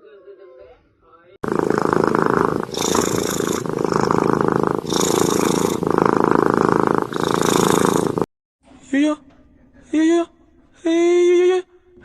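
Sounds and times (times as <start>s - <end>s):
cat purring: 1.4s - 8.3s.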